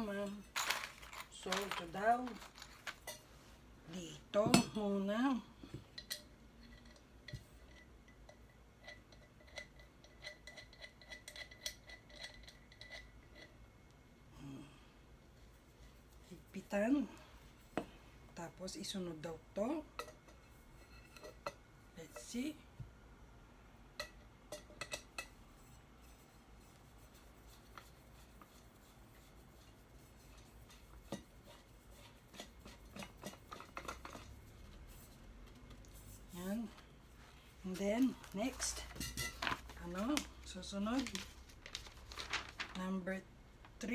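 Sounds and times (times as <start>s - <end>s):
hard parts clicking and tapping: 0.5s - 3.2s
small clicks and rubbing: 41.0s - 42.8s.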